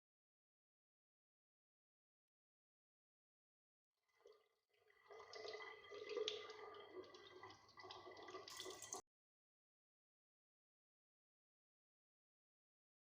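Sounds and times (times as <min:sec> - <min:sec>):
tap water running: 0:04.9 - 0:09.0.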